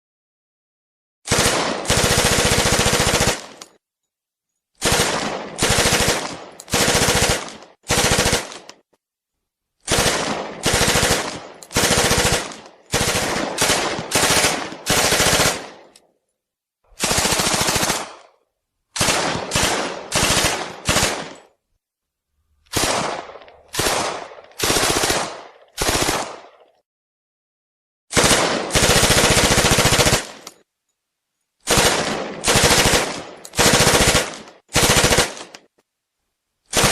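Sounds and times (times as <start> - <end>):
submachine gun automatic bursts: 1.3 - 3.8, 4.8 - 8.8, 9.8 - 15.8, 17.0 - 18.2, 19.0 - 21.4, 22.7 - 26.5, 28.1 - 30.5, 31.6 - 35.6.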